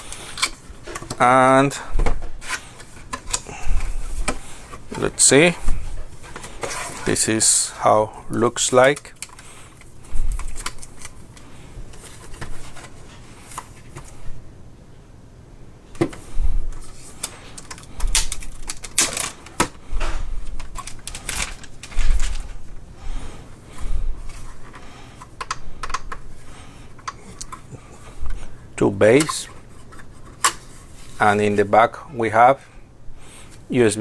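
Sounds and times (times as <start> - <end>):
handling clicks and taps: 24.7 - 26.2, 27.0 - 27.6.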